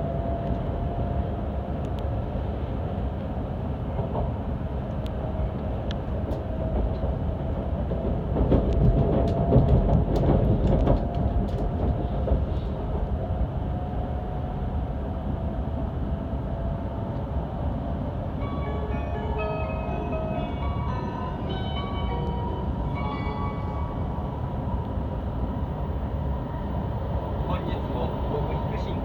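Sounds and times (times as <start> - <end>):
train low rumble: 0.0 - 29.0
onboard chime melody: 18.4 - 24.8.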